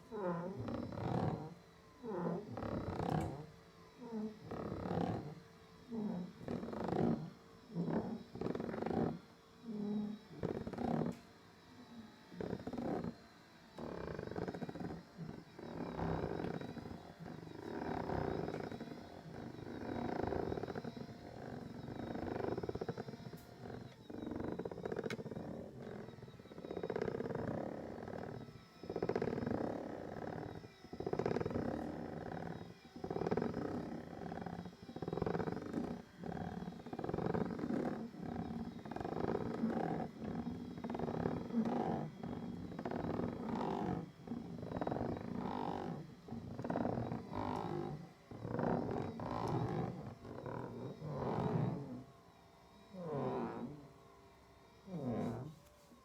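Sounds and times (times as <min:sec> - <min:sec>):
massage seat grinding noise: 0:00.0 - 0:56.0.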